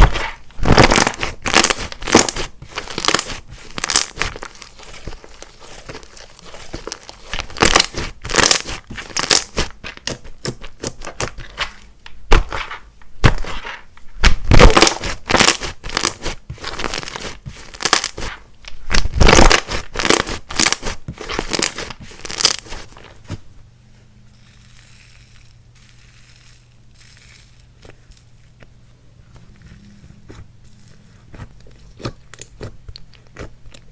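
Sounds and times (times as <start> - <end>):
sticky slime crackling and popping: 0.0 - 11.5, 13.2 - 22.8, 30.3 - 33.9
faint low hum: 22.8 - 33.9.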